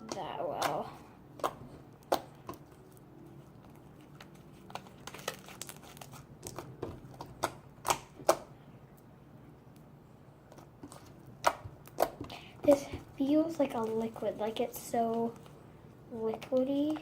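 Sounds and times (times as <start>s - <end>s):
slime squished by hand: 0.1s - 8.5s.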